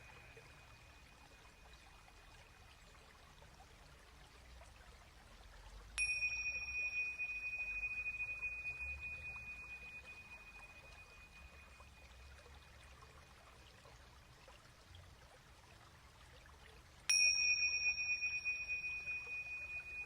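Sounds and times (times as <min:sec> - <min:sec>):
small metal chime ringing: 0:00.0 - 0:01.1, 0:06.0 - 0:12.4, 0:17.1 - 0:20.0.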